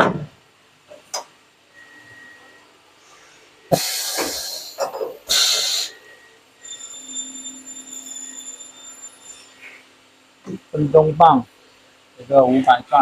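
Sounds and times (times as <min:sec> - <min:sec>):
machine high whine: 0:03.6 - 0:11.8
compressed air hiss: 0:03.7 - 0:06.0.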